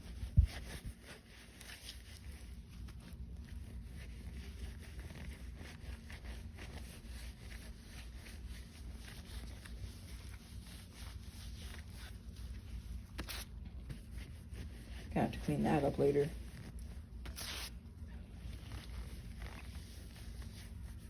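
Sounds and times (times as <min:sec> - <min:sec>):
low steady hum: 0:00.0 - 0:21.0
rustling of gloved hands: 0:00.0 - 0:21.0.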